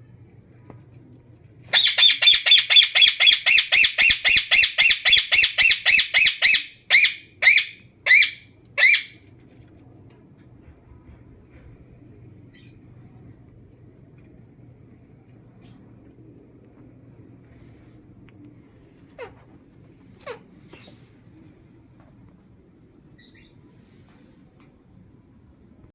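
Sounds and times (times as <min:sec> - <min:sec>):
high pulsing insect trill: 0:00.0 - 0:25.9
parrot screeching: 0:01.7 - 0:09.2.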